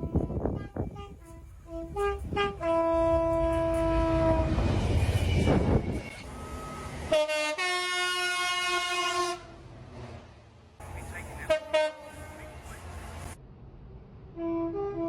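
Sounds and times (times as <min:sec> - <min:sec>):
train horn blasts: 0:00.0 - 0:04.8, 0:07.1 - 0:09.5, 0:11.5 - 0:12.8
train rumble: 0:00.0 - 0:15.0.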